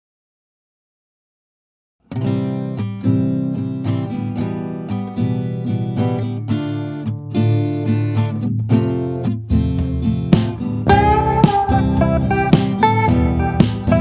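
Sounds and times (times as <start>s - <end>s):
acoustic guitar picking and strumming: 2.1s - 14.0s
steady bass line: 9.6s - 14.0s.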